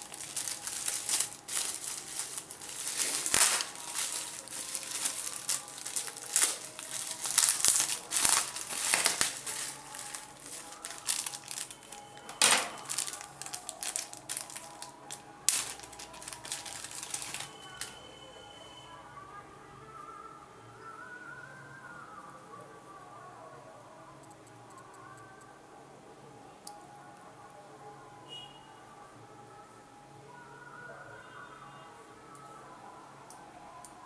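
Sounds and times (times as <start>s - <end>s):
plastic packaging crinkling: 0.0s - 18.1s.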